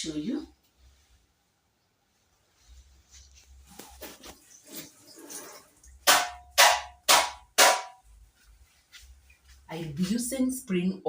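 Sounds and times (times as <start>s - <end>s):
soft rustling and clatter: 2.1s - 6.0s, 8.1s - 10.3s
sharp ringing knocks: 6.1s - 8.0s.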